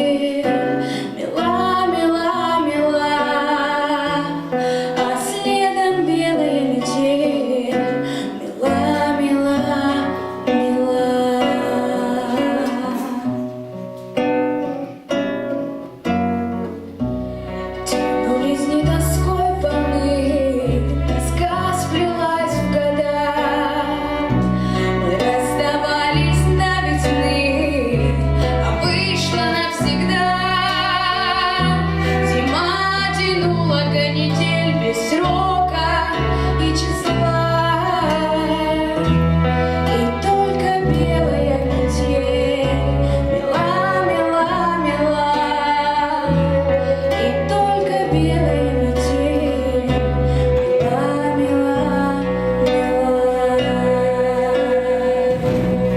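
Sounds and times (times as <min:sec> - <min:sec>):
woman singing: 0:00.0 - 0:13.8, 0:17.7 - 0:55.9
plucked notes: 0:00.0 - 0:55.9
bass line: 0:16.2 - 0:55.9.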